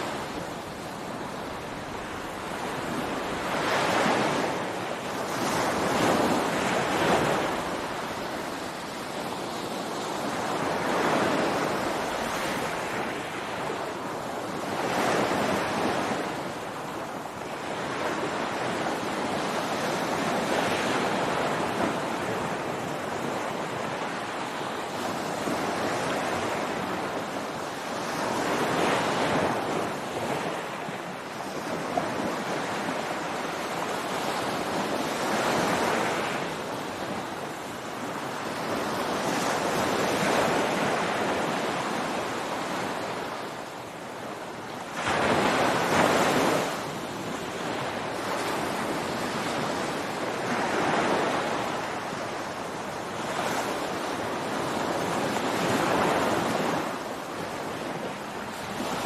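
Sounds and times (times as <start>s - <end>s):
ocean surf breaking on beach: 0.0s - 59.0s.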